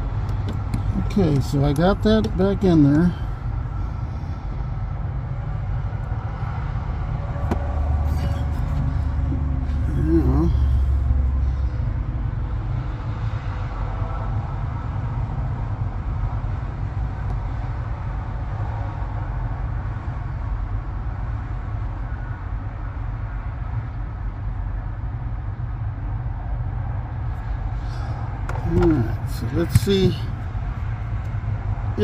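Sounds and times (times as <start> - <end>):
diesel truck engine idling: 0.0 - 13.1.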